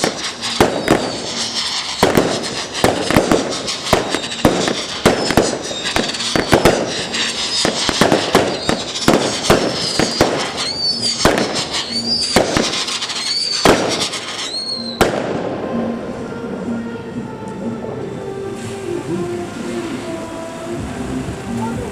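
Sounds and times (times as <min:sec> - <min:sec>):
high firework whistles: 0:00.0 - 0:15.9
fireworks bangs and crackles: 0:00.0 - 0:16.7.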